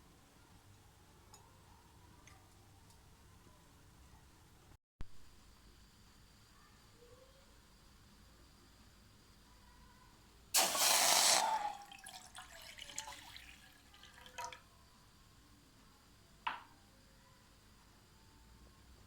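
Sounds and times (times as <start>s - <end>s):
water dripping: 10.6s - 14.6s
water poured into a pot: 10.6s - 14.7s.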